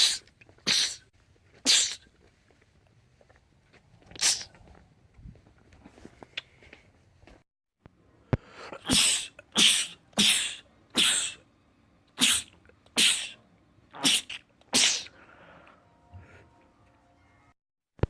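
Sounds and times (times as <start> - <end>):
man sneezing: 8.7 - 11.4, 12.2 - 13.4, 14.0 - 15.2.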